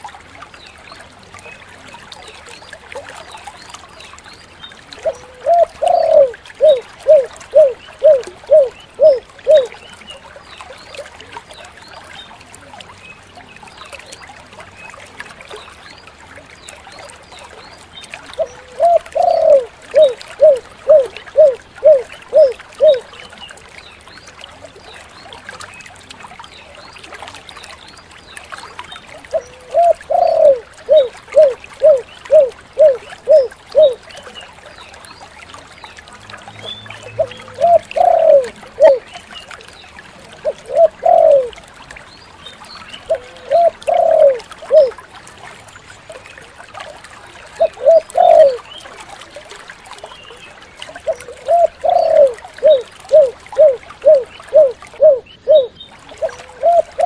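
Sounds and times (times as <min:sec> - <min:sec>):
dove cooing: 0:05.0 - 0:09.7, 0:18.4 - 0:23.1, 0:29.3 - 0:34.0, 0:37.2 - 0:39.1, 0:40.4 - 0:41.5, 0:43.1 - 0:45.0, 0:47.6 - 0:48.6, 0:51.0 - 0:57.0.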